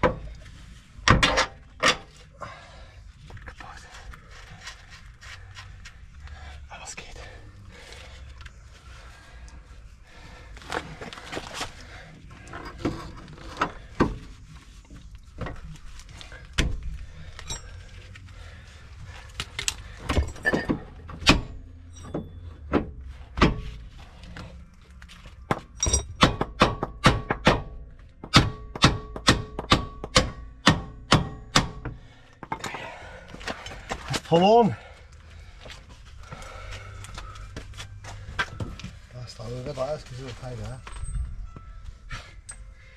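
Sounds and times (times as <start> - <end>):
hammer striking metal: 25.5 - 32.0
struck metal ringing: 25.5 - 32.7.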